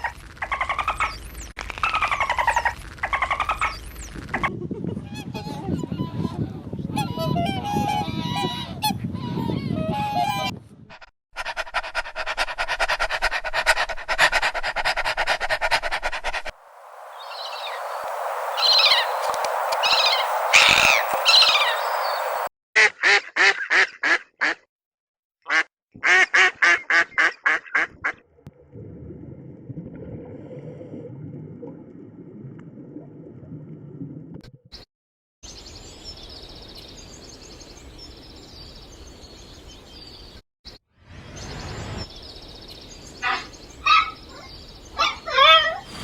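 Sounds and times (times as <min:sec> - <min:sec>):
high animal calls: 0:16.8 - 0:22.5
pulsed animal calls: 0:17.2 - 0:22.5
rapid repeated animal calls: 0:17.2 - 0:22.5.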